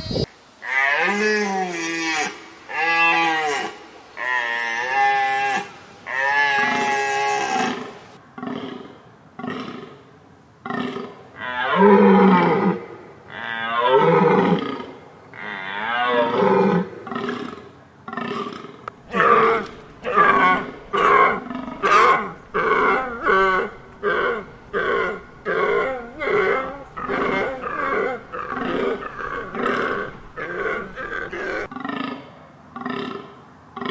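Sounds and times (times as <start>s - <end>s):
deer calling: 19.1s - 31.7s.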